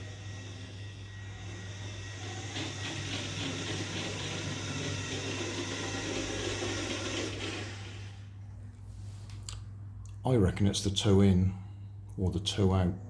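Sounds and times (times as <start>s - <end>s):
toy car electric motor whirring: 0.0s - 8.2s.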